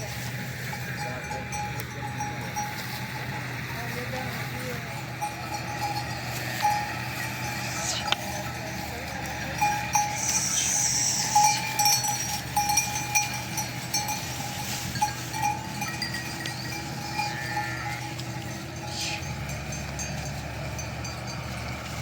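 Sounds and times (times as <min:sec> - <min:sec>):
sheep bells clinking: 0:00.0 - 0:22.0.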